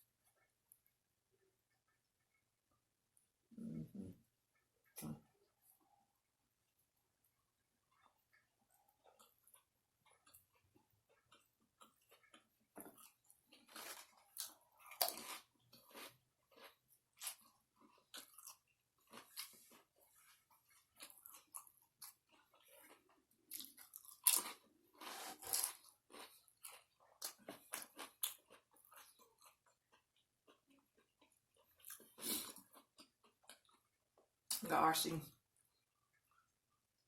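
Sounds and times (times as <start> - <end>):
chewing and crunching sandwich: 4.5 - 34.6.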